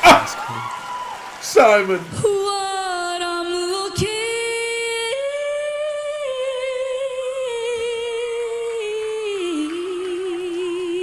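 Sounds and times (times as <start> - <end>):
woman singing a long note: 2.2 - 11.0.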